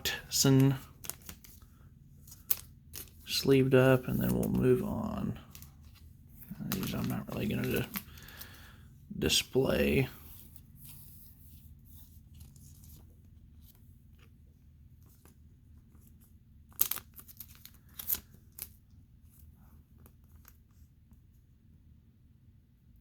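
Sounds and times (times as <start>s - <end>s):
crisp plastic rustles: 0.0s - 8.7s
trading cards being handled: 0.0s - 20.9s.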